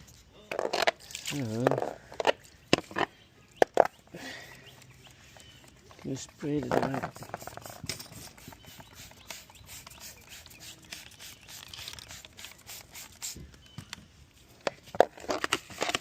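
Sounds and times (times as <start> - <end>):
sharp spraying strokes: 7.0 - 13.4
hissing spray squirts: 7.0 - 13.6.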